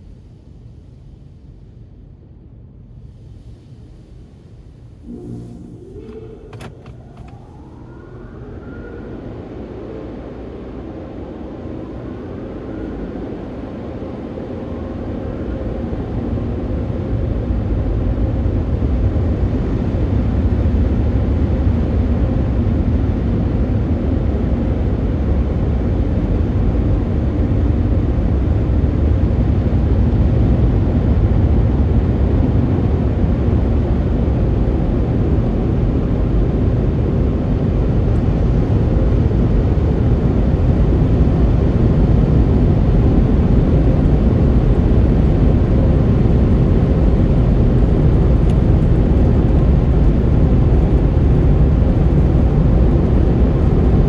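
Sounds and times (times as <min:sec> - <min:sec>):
heavy vehicles rumbling: 0:05.0 - 0:13.0.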